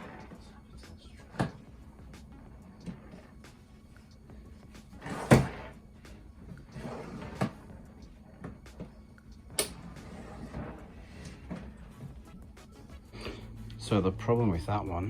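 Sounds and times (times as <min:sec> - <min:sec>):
drawer sliding and knocking shut: 0:05.0 - 0:05.8, 0:06.8 - 0:07.6.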